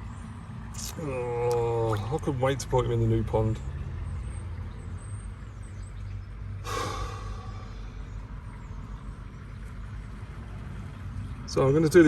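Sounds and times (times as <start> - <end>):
man breathing out sharply: 6.6 - 8.3
low rumble: 6.6 - 9.7.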